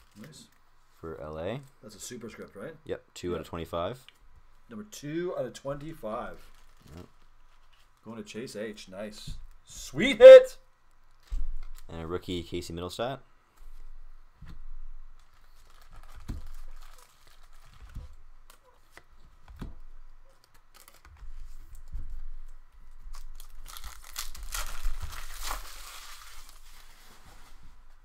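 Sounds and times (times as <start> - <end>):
plastic wrappers tearing and crinkling: 6.4 - 8.1, 15.2 - 19.0, 20.3 - 21.9, 23.0 - 27.6.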